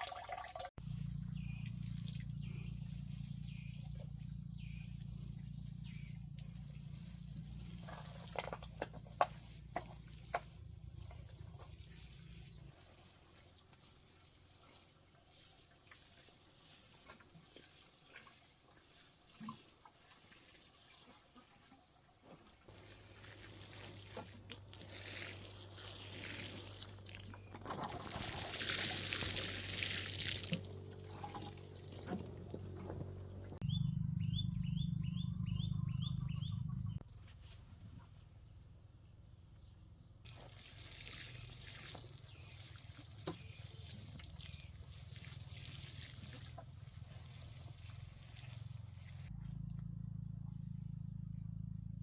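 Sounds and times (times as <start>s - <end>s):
low hum: 0.8s - 12.8s, 29.1s - 37.1s, 46.5s - 52.0s
water running and splashing: 22.7s - 32.8s, 40.3s - 49.3s.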